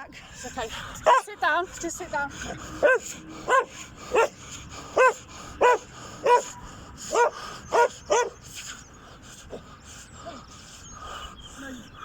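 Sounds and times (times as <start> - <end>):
small dog barking: 2.8 - 4.3, 5.0 - 6.5, 7.1 - 8.4.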